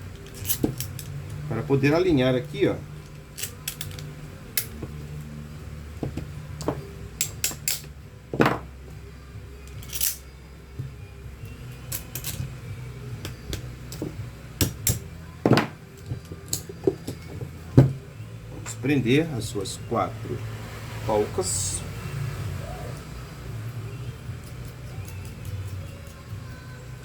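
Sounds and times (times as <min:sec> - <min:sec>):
metal parts clicking and knocking: 0:00.1 - 0:01.4, 0:03.0 - 0:05.0, 0:06.1 - 0:08.6, 0:09.6 - 0:10.2, 0:11.8 - 0:12.5, 0:13.2 - 0:18.0.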